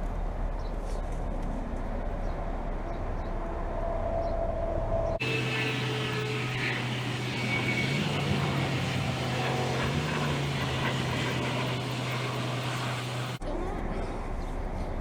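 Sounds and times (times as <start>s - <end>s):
fan whooshing: 5.2s - 13.4s
heat pump humming: 5.2s - 13.4s.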